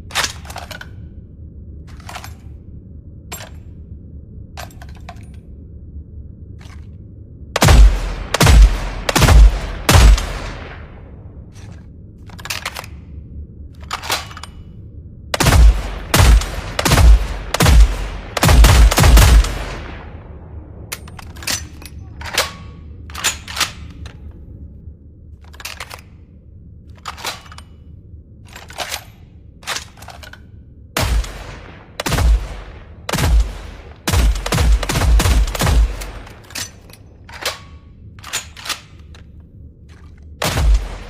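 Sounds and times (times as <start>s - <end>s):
rifle gunshots: 7.6s - 11.0s, 15.4s - 20.2s, 31.0s - 36.4s.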